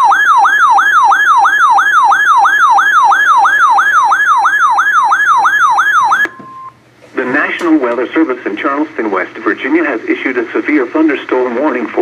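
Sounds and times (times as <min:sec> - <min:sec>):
warbling electronic alert siren: 0:00.0 - 0:06.7.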